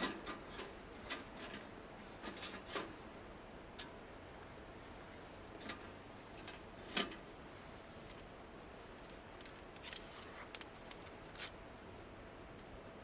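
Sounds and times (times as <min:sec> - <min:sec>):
scrapes and clicks of handling: 0:09.0 - 0:11.6.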